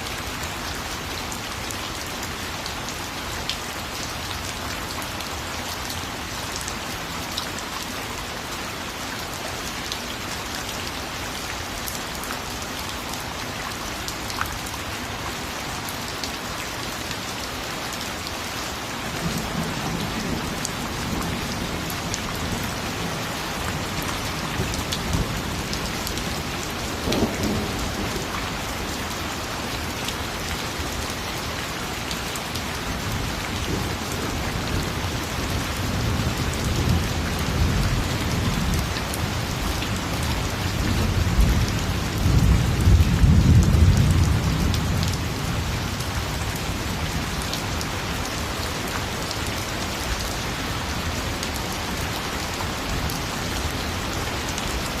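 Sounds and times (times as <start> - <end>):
heavy rain: 0.0 - 55.0
thunder rumbling: 27.0 - 28.3.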